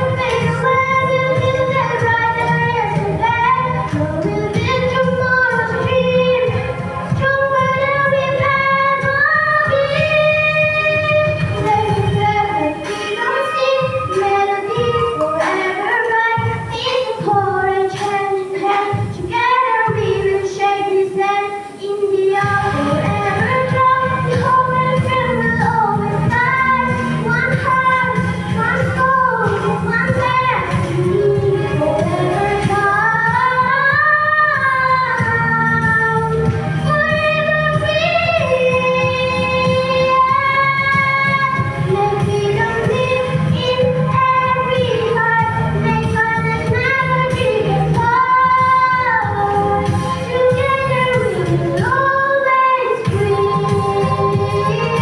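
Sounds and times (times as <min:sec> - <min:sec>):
children singing: 0:04.6 - 0:55.0
music with low beat: 0:22.4 - 0:52.2, 0:53.0 - 0:55.0.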